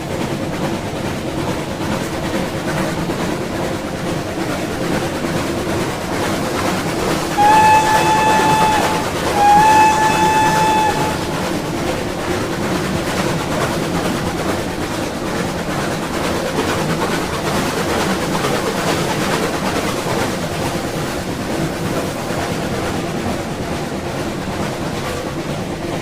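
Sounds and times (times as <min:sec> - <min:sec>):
steam train rumbling past: 0:00.0 - 0:26.0
steam whistle blasts: 0:07.3 - 0:11.7.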